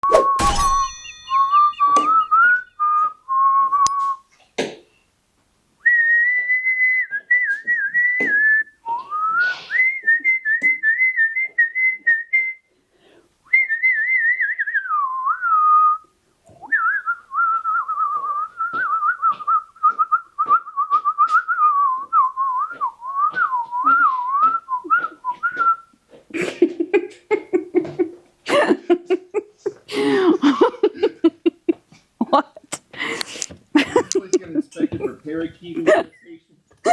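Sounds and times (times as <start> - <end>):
parakeet whistling: 0.0 - 3.1.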